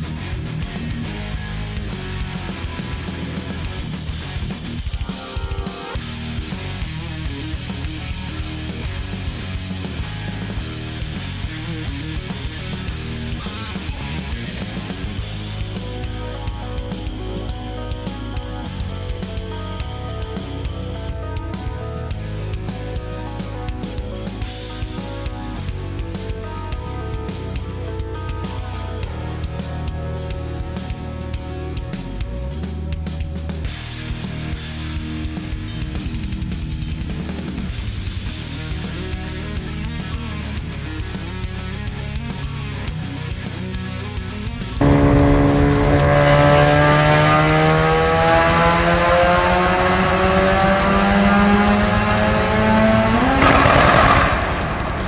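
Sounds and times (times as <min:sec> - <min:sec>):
rock music with guitar and drums: 0:00.0 - 0:55.0
car engine accelerating: 0:06.0 - 0:22.0, 0:44.8 - 0:55.0
rushing noise: 0:44.8 - 0:49.6, 0:53.1 - 0:55.0.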